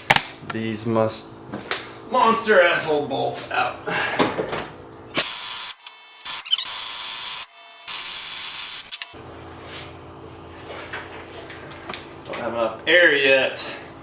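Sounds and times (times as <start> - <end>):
pneumatic wrench hissing: 5.2 - 9.2.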